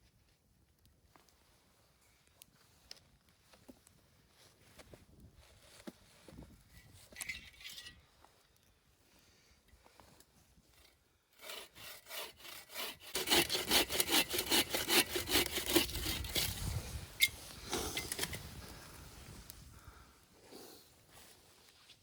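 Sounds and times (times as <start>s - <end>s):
hand saw cutting wood: 11.4s - 18.3s.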